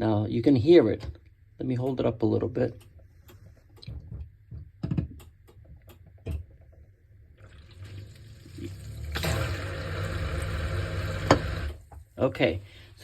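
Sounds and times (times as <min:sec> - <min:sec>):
drain pump humming: 0:07.4 - 0:11.9.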